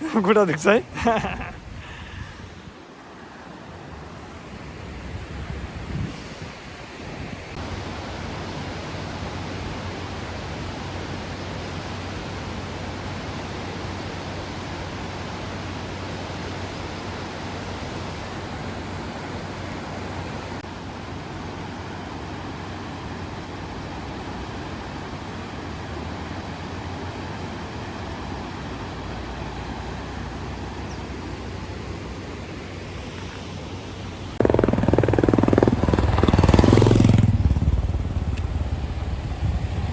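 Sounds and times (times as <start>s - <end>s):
road noise: 0.0s - 2.9s, 4.1s - 39.9s
wind rush: 1.2s - 2.8s, 4.6s - 7.6s, 34.4s - 39.9s
motorcycle engine hum: 34.4s - 39.9s.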